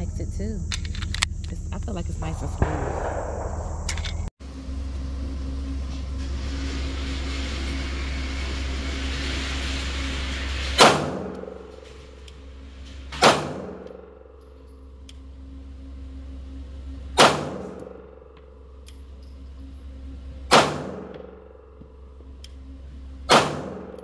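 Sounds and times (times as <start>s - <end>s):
low hum and hiss: 0.0s - 10.2s, 11.4s - 24.0s
gunshots: 2.2s - 4.3s, 17.2s - 18.0s, 20.5s - 21.2s, 23.3s - 24.0s.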